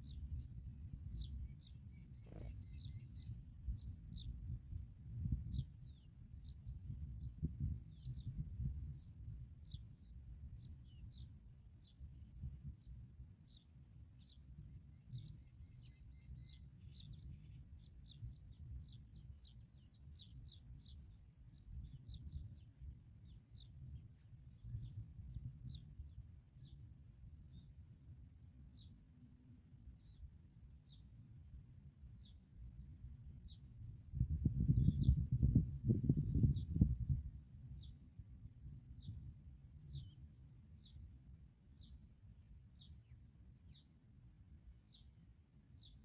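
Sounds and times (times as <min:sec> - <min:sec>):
small birds chirping: 0:00.0 - 0:27.7, 0:33.4 - 0:37.1, 0:38.9 - 0:41.1, 0:44.6 - 0:46.0.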